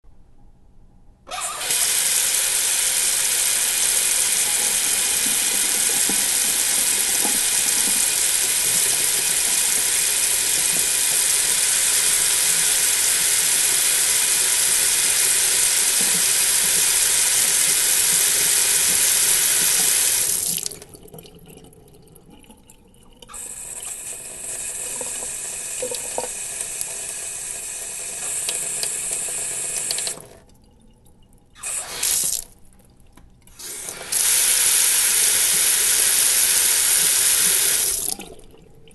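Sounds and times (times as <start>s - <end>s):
tap water splashing into sink: 3.6s - 24.0s, 28.1s - 38.9s
small clicks and drips: 20.5s - 24.0s, 28.2s - 31.7s, 32.3s - 33.6s, 38.1s - 38.9s.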